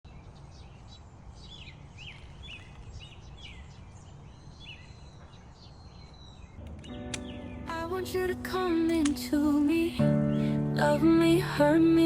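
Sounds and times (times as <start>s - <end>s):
small birds chirping: 0.0s - 11.3s
low outdoor rumble: 6.5s - 12.0s.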